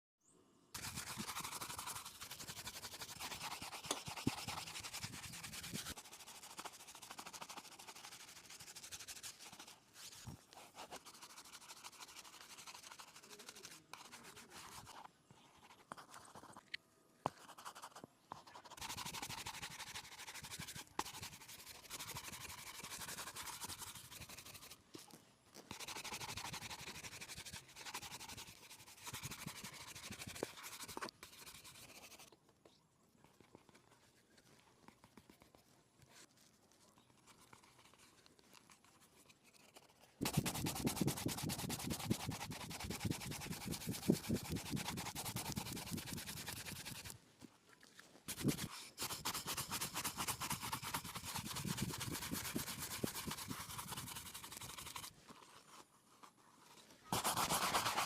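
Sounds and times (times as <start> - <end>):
brush scrubbing a shoe: 0.8 - 16.6, 17.3 - 32.4, 33.4 - 47.2, 48.2 - 58.0.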